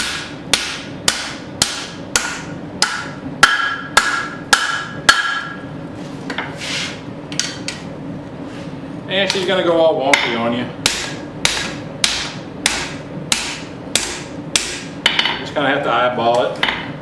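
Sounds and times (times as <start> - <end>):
hammer striking hot steel on anvil: 0.0 - 5.6, 10.1 - 15.4.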